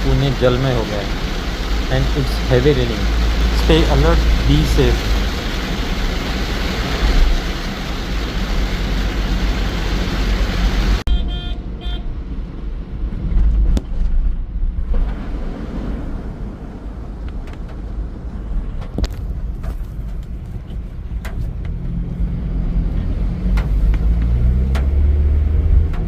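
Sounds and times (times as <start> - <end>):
heavy rain hissing: 0.0 - 11.0
vehicles passing on road: 0.0 - 26.0
car horn honking: 11.1 - 12.1.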